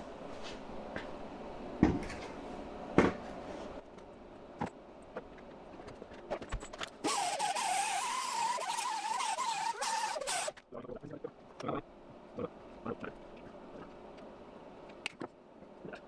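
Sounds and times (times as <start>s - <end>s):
power grinder whining: 7.0s - 10.6s.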